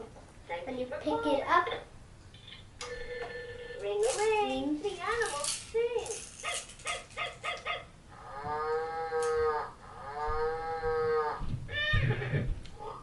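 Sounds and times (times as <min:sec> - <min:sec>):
toy speaker cow moos: 0:08.2 - 0:11.4.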